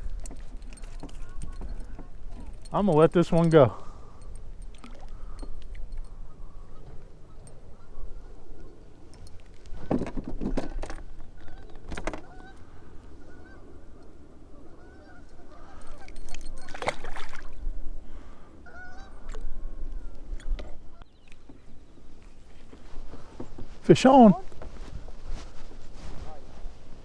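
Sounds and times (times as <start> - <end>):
geese honking: 11.4 - 13.9, 14.5 - 16.1, 18.6 - 19.2.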